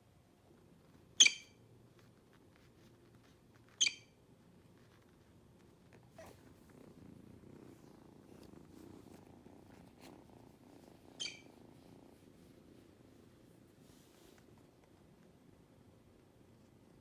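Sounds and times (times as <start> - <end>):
kitten squeak: 1.2 - 1.6, 3.7 - 4.2, 11.0 - 11.7
kitten purring: 4.4 - 17.0.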